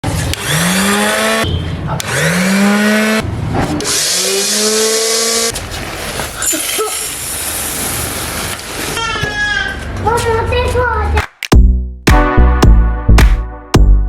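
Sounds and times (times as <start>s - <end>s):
electric grinder motor whine: 0.2s - 1.4s, 2.0s - 3.2s.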